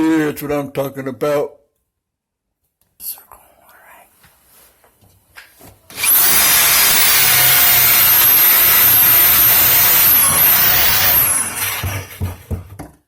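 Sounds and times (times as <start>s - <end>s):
power drill with hole saw: 5.9s - 12.5s.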